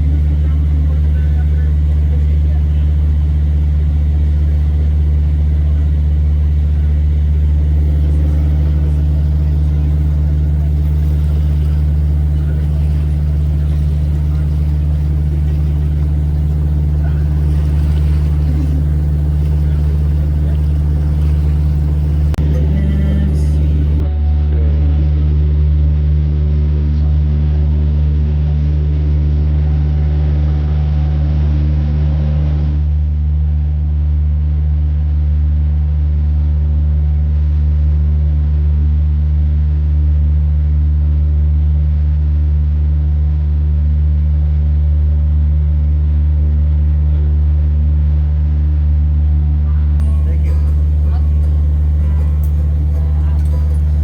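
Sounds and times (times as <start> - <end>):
boat engine droning: 0.0 - 24.1, 50.0 - 54.0.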